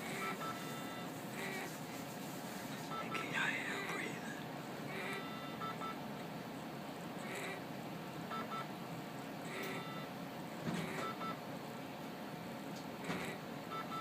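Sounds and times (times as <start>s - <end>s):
faint electronic beeps: 0.2s - 1.1s.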